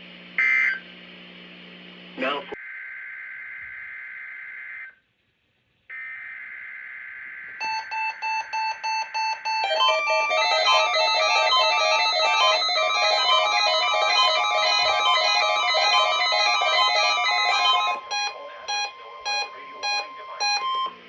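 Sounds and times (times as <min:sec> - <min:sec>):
quick beeps: 0:07.6 - 0:20.9
electronic music with plucked tones: 0:09.6 - 0:18.0.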